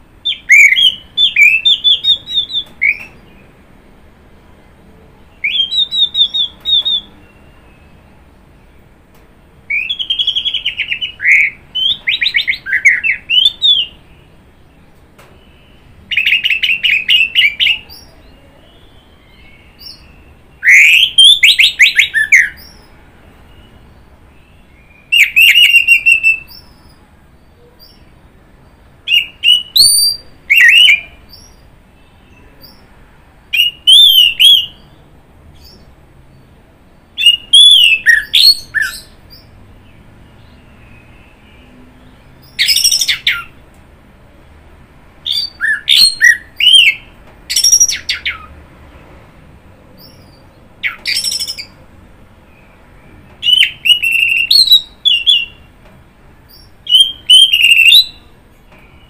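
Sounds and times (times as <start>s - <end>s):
thrush singing whistled notes: 0.3s - 3.5s, 5.4s - 8.1s, 9.7s - 14.3s, 15.3s - 28.0s, 29.1s - 32.8s, 33.6s - 35.0s, 37.2s - 43.6s, 45.3s - 48.5s, 52.4s - 55.7s, 56.5s - 59.0s.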